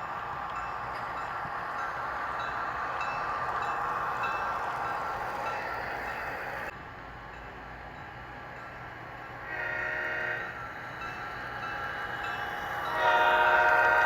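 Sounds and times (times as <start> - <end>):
locomotive air horn blasts: 9.5 - 10.6, 12.9 - 14.0.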